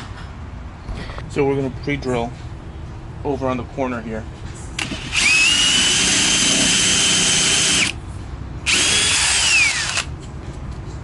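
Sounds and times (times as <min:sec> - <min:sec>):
power drill whining: 0:04.8 - 0:08.0, 0:08.7 - 0:10.1.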